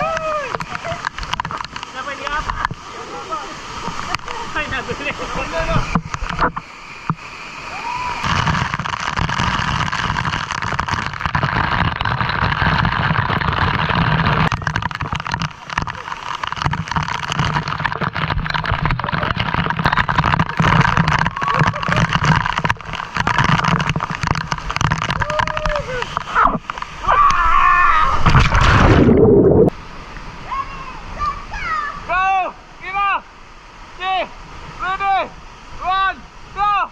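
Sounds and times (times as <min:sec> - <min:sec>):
waterfall rushing: 0:00.0 - 0:36.9
crackles and knocks near microphone: 0:00.2 - 0:02.8, 0:05.7 - 0:07.2, 0:08.2 - 0:27.4.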